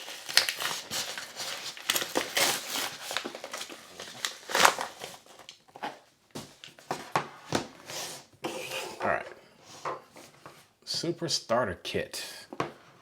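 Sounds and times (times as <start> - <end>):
packaging rustling and crinkling: 0.0 - 8.3.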